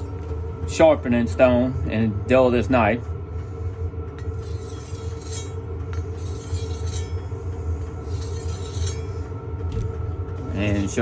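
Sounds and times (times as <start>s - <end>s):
steady low hum: 0.0s - 11.0s
knife scraping sharpening stone: 4.2s - 9.2s.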